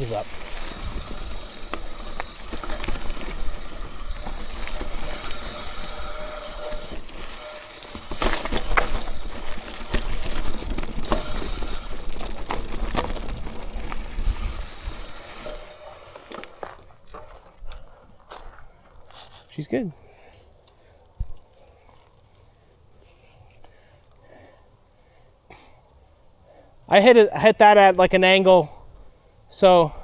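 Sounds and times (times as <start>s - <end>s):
bike chain and frame rattling: 0.0s - 18.0s
bike knocking on roots: 0.0s - 18.5s
bike tyres rumbling on trail: 0.0s - 19.0s.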